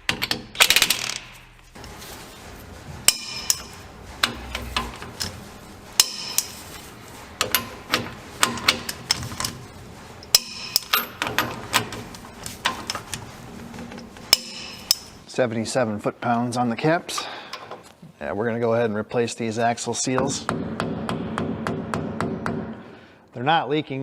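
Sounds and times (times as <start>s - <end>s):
tools clinking on steel parts: 3.1s - 5.3s, 6.0s - 6.7s, 7.4s - 9.6s, 10.2s - 13.2s, 13.8s - 15.2s.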